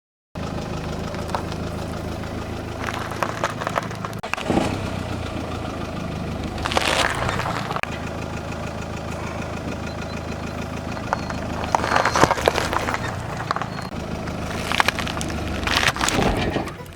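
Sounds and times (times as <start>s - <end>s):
car engine idling: 0.4s - 16.9s
objects crunching under tyres: 0.4s - 16.9s.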